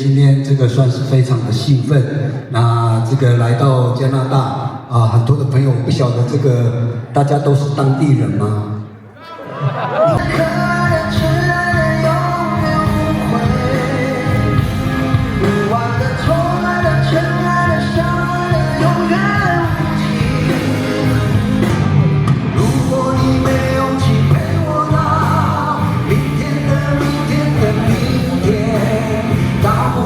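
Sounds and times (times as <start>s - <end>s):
person singing: 10.0s - 30.0s
pop-rock band playing: 10.0s - 30.0s.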